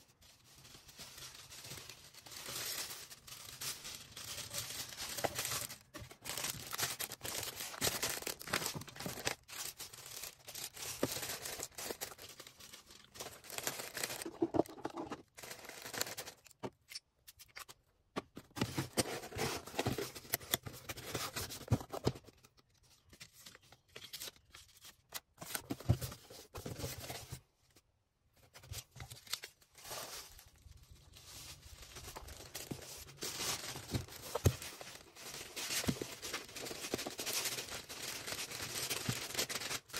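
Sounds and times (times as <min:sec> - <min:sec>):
packaging rustling and tearing: 0:00.2 - 0:16.6, 0:28.7 - 0:39.9.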